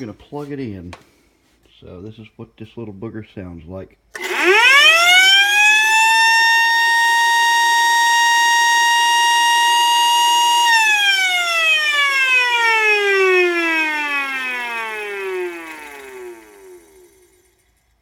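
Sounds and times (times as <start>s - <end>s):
electric siren wailing: 4.2s - 17.4s.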